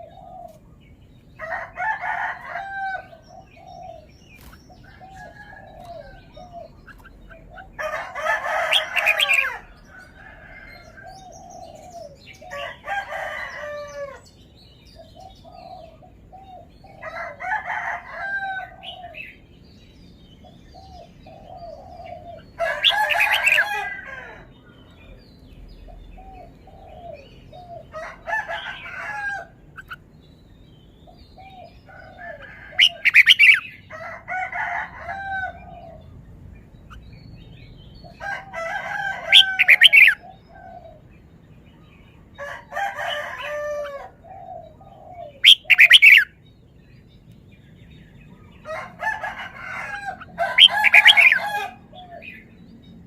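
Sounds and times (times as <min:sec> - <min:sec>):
bird warbling song: 0:00.0 - 0:34.0, 0:35.4 - 0:53.0
bird chirping notes: 0:44.4 - 0:48.7.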